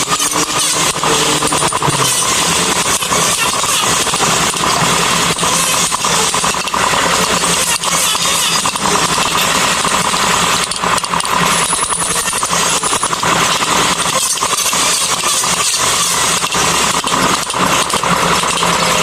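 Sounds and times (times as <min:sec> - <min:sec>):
power tool motor running: 0:00.0 - 0:19.0.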